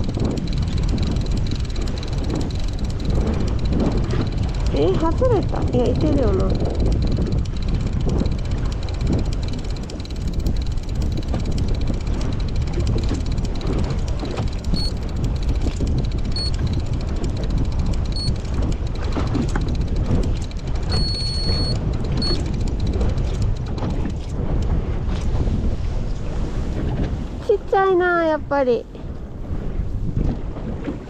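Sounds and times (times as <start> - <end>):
wind buffeting microphone: 0.0 - 31.0
high beeps: 14.7 - 15.0, 20.9 - 22.4.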